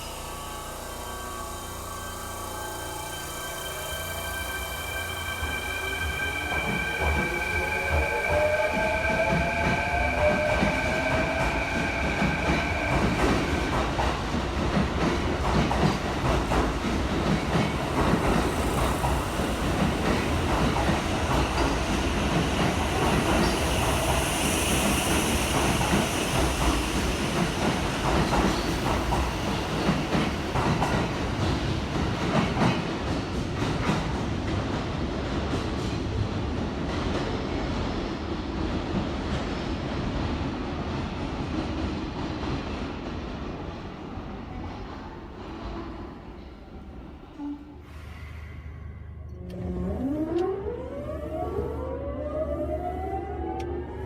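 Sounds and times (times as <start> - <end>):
train motor whine: 0.0 - 14.2
train running rumble: 0.0 - 46.2.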